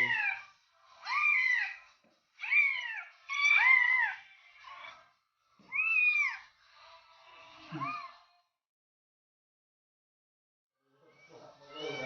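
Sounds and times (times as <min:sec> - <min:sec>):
cat meowing: 0:00.0 - 0:01.8, 0:02.4 - 0:05.0, 0:05.7 - 0:06.4, 0:11.2 - 0:12.0.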